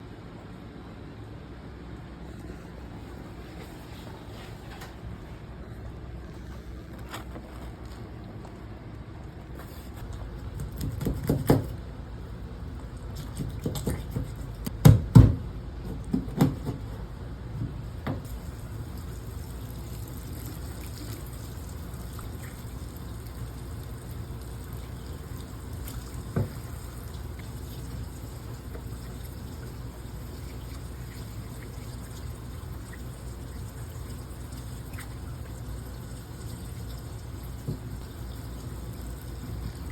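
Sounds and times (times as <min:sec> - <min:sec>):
water sloshing and lapping: 0:12.6 - 0:14.7, 0:18.2 - 0:39.9.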